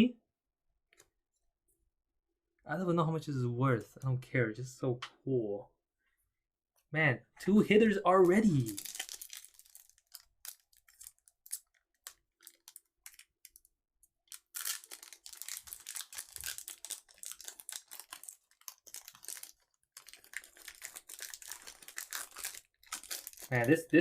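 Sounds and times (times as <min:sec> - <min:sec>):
plastic packaging crinkling: 0:08.2 - 0:23.9.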